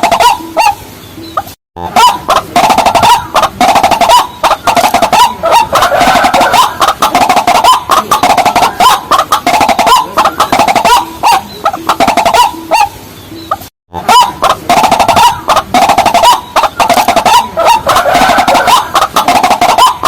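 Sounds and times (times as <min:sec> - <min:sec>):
lower evenly spaced bird notes: 0:00.0 - 0:01.5, 0:09.5 - 0:17.6
birds clucking calls: 0:00.0 - 0:20.0.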